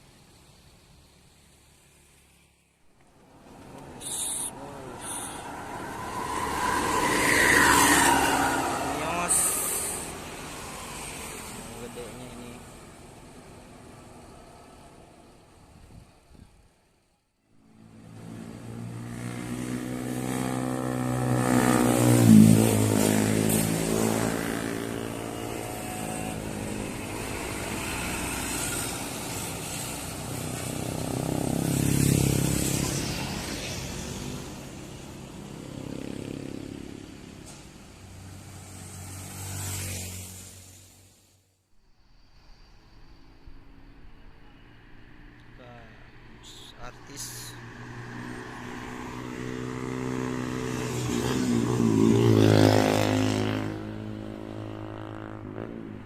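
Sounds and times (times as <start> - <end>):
vehicles passing: 0.0 - 56.0
bus engine passing: 3.1 - 15.7, 17.7 - 41.4.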